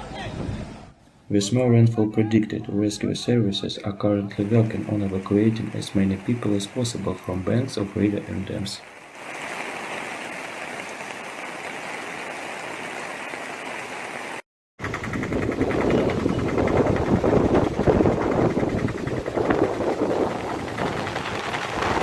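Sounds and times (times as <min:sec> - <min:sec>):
floodwater rushing: 0:03.0 - 0:22.0
uneven rumbling rush: 0:14.8 - 0:22.0.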